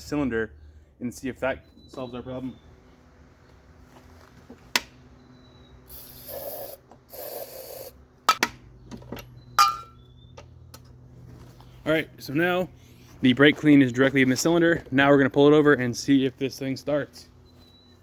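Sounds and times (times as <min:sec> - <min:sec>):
aerosol spray hissing: 0:05.9 - 0:07.9.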